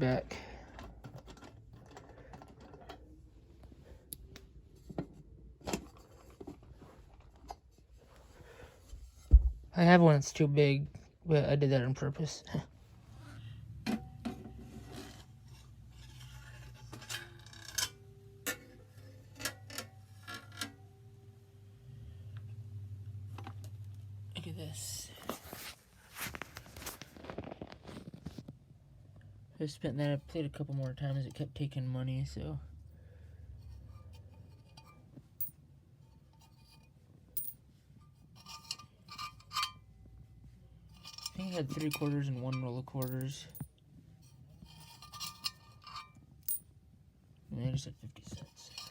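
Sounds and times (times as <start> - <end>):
clicks and rattles of machine parts: 0.7 - 3.2
coins clinking: 37.4 - 37.6, 43.0 - 43.7, 44.7 - 46.6.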